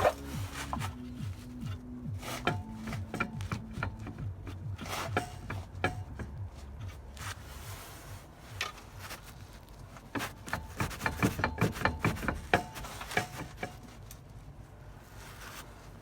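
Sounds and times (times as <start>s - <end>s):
metal clicks and clunks: 0.0s - 7.2s, 10.0s - 14.2s.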